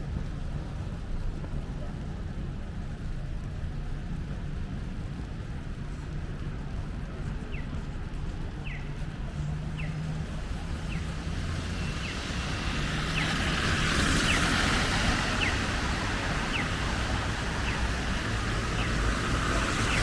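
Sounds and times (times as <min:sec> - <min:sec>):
traffic running: 0:00.0 - 0:20.0.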